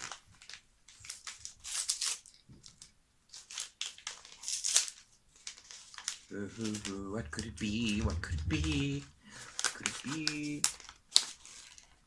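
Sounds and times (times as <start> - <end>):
gift wrapping paper tearing: 0.0 - 2.4, 3.3 - 7.0, 9.4 - 12.0.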